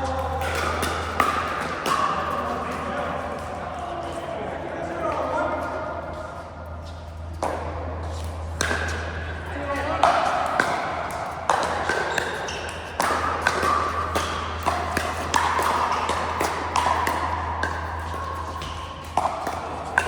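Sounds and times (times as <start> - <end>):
paddles hitting plastic ball: 0.0 - 2.9, 7.4 - 9.1, 10.0 - 20.0
low hum: 0.0 - 20.0.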